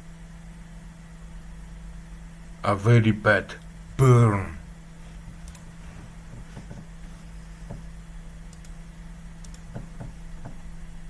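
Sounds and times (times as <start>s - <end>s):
low electrical hum: 0.0s - 11.0s
faint clicks: 5.4s - 5.7s, 8.5s - 8.8s, 9.4s - 9.7s.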